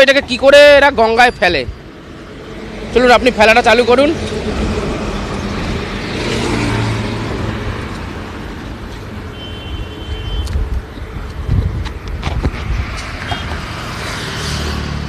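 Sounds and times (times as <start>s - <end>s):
traffic rumble: 0.0s - 15.0s
strong wind: 4.2s - 15.0s.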